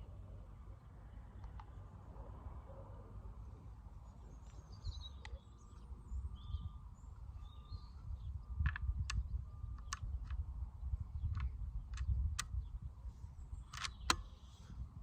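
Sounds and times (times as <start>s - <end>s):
low wind rumble: 0.0s - 15.0s
small birds chirping: 4.0s - 14.8s
sharp clicks: 8.6s - 10.4s, 11.2s - 12.6s, 13.7s - 14.4s.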